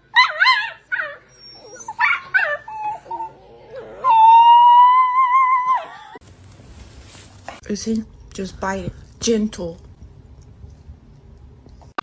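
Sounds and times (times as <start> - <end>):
dog whining and yelping: 0.2 - 3.4, 4.0 - 6.2
dog howling: 0.2 - 6.2.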